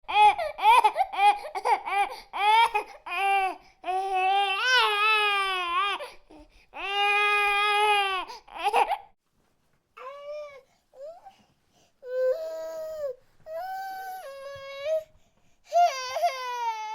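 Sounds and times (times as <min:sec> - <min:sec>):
baby crying: 0:00.1 - 0:09.1, 0:15.7 - 0:16.9.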